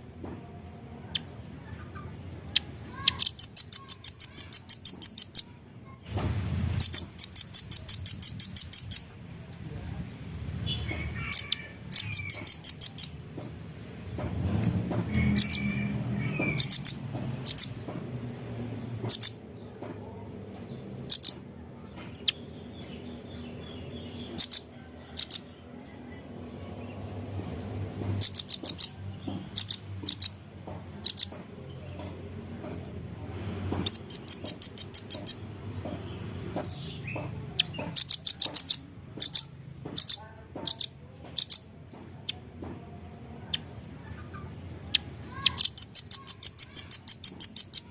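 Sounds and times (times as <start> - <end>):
bird calling in sharp high chips: 1.6 - 6.0, 10.7 - 13.2, 33.8 - 35.5, 44.1 - 47.9.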